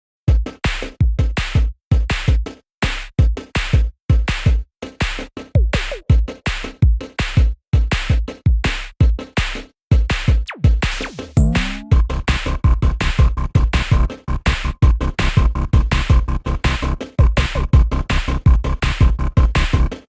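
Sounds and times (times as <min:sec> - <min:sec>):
electronic music with fast beat: 0:00.3 - 0:20.0.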